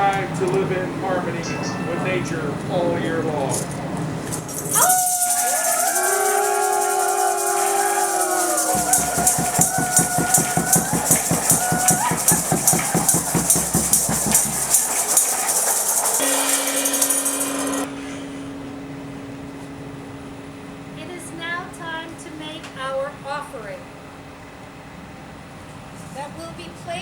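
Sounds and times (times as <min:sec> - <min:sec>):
long gliding held notes: 0:00.0 - 0:13.4, 0:16.2 - 0:24.6
steady high rattle: 0:00.0 - 0:24.5
pulsing beat: 0:04.4 - 0:19.3
low held note: 0:16.2 - 0:23.1.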